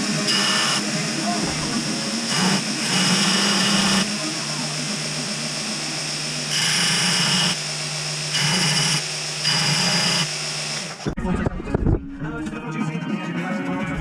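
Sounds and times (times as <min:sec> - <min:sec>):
power grinder grinding metal: 0:00.0 - 0:11.1.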